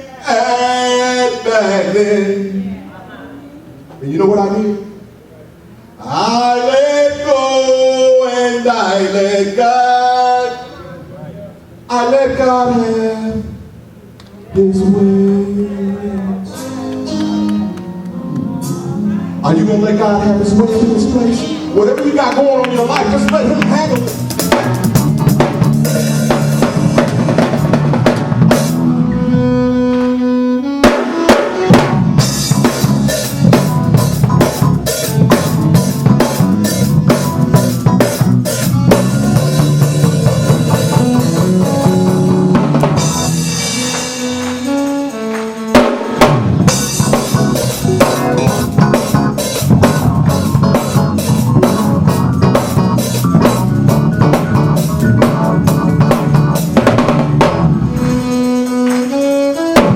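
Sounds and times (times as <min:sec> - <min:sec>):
live band playing gospel music: 0:00.0 - 0:59.9
keyboard chords: 0:09.4 - 0:59.9
drum kit beat: 0:16.4 - 0:59.9.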